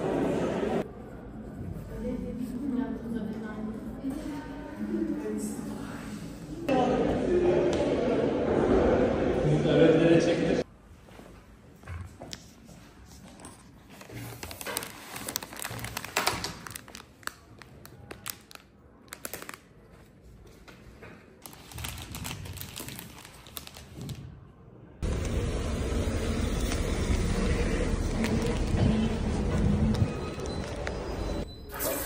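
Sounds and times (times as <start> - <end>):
steady low rumble: 25.0 - 30.8.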